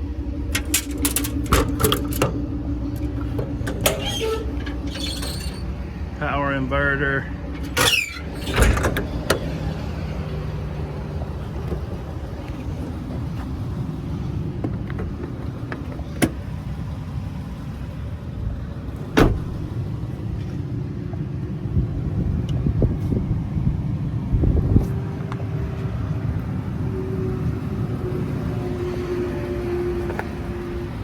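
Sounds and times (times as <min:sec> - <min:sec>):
truck engine idling: 0:00.0 - 0:31.0.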